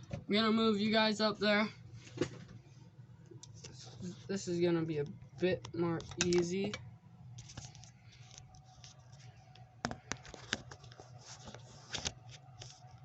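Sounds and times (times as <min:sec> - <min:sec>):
phone handling rustling: 0:09.9 - 0:12.8.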